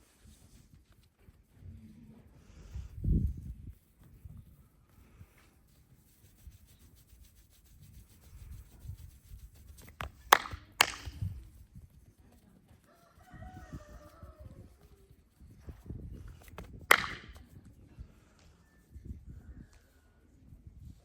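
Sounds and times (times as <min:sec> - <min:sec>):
hands rubbing during massage: 0:00.0 - 0:17.8
sharp snapping cracks: 0:10.3 - 0:11.2, 0:16.9 - 0:17.4.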